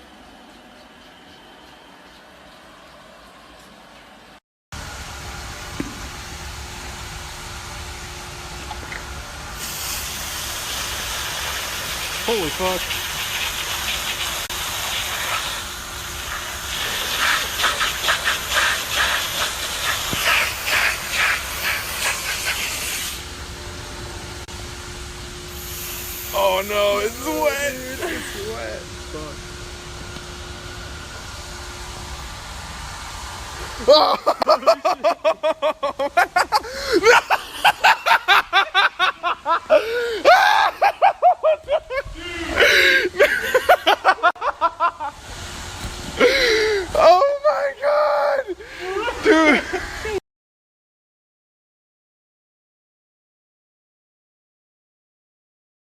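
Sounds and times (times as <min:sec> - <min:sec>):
water spraying under pressure: 0:08.6 - 0:23.3, 0:25.5 - 0:29.3, 0:32.1 - 0:50.2
high-pitched laughter: 0:33.8 - 0:45.2, 0:48.3 - 0:50.2.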